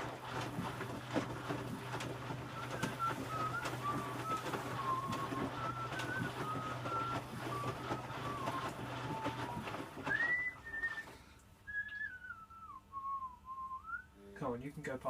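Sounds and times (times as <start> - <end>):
washing machine humming: 0.0 - 15.0
person whistling a tune: 2.8 - 14.2.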